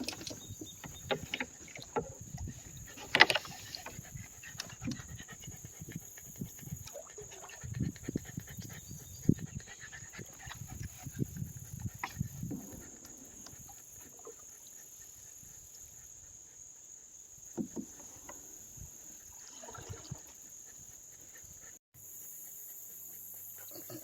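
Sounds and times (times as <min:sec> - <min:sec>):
dog panting: 0:02.4 - 0:17.1, 0:20.6 - 0:24.0
knocks against canoe hull: 0:17.6 - 0:18.1.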